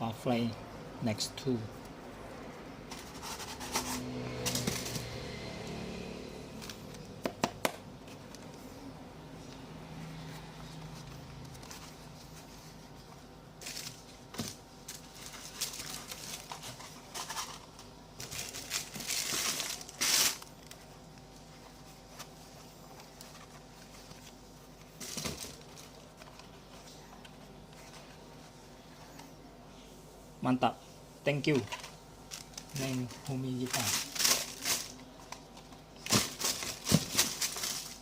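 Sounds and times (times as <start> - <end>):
packaging crinkling: 13.6 - 21.0, 31.6 - 38.0.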